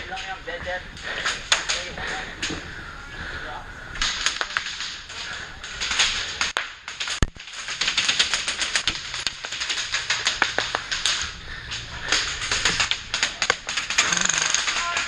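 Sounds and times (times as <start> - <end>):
airsoft guns firing: 12.1 - 15.0.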